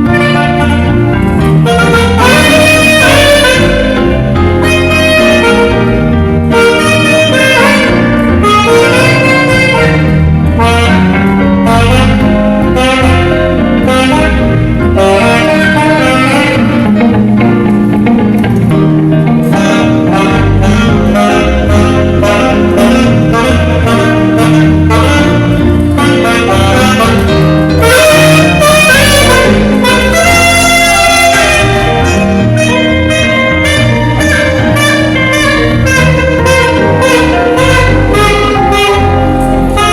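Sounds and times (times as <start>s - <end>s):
bass and drums: 0.0s - 39.9s
saxophone jazz melody: 0.0s - 39.9s.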